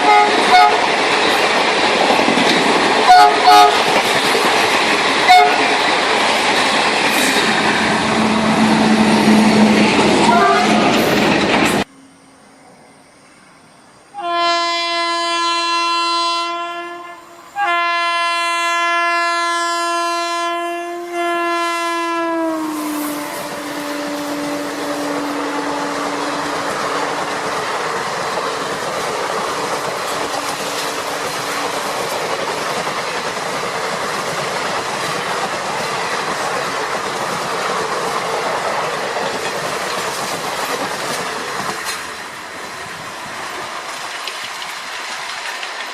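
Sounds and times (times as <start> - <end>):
locomotive horn blasts: 0.0 - 0.8, 3.1 - 3.8, 5.3 - 5.6, 8.2 - 11.0, 14.2 - 26.6
train rumbling on rails: 0.0 - 11.9, 20.9 - 45.9.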